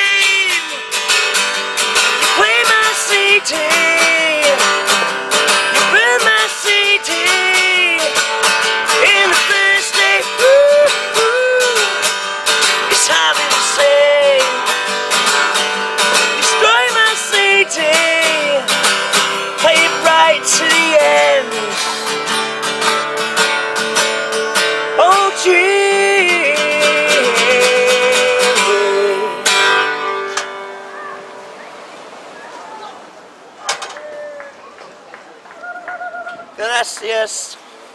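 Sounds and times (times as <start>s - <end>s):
man singing: 0.0s - 1.1s, 2.2s - 14.8s, 16.1s - 22.2s, 24.8s - 29.8s
strummed acoustic guitar: 0.0s - 31.7s.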